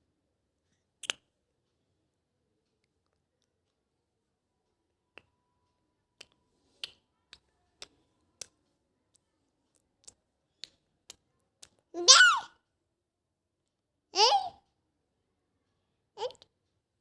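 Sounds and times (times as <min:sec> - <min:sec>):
tongue clicks: 0:01.0 - 0:01.3, 0:06.2 - 0:11.8.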